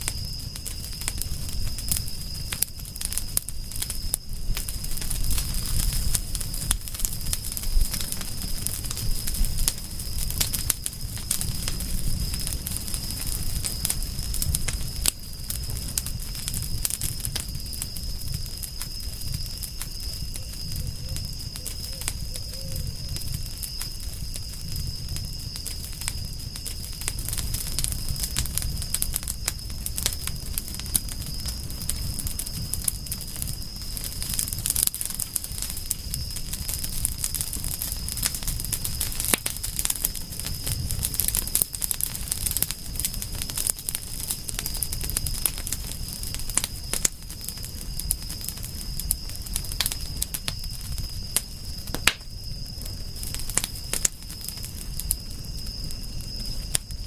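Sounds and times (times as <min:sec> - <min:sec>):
low rumble of flames: 0:00.0 - 0:57.0
wood fire crackling: 0:00.0 - 0:57.0
sharp pops and snaps: 0:51.9 - 0:52.3.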